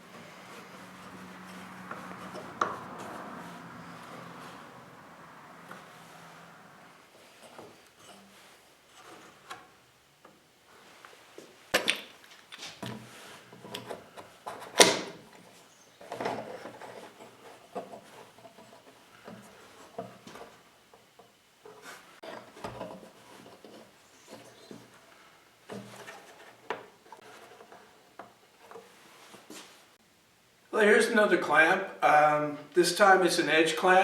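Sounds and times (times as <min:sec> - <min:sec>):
wood rubbing and scraping: 0:00.0 - 0:09.8, 0:12.3 - 0:30.0.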